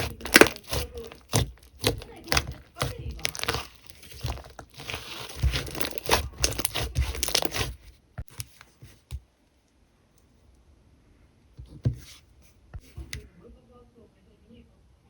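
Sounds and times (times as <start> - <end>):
slime crackling: 0.0 - 8.5.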